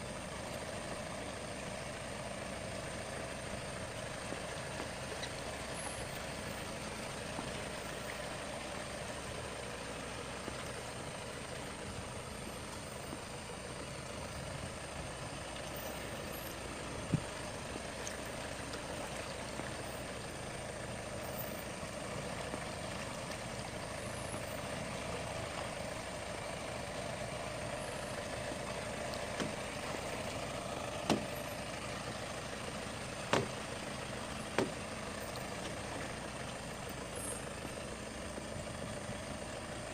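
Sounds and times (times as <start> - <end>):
heavy vehicle engine running: 0.0 - 39.9
sharp knocks or clanks: 33.3 - 33.6, 34.5 - 34.8.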